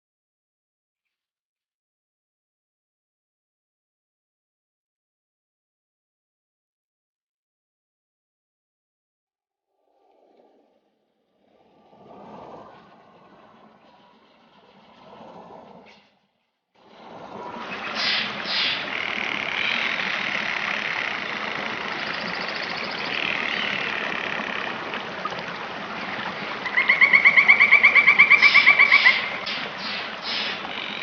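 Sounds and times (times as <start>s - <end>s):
birds chirping: 17.6s - 25.3s, 26.2s - 31.0s
loud rapid bird trill: 17.7s - 24.6s, 26.7s - 31.0s.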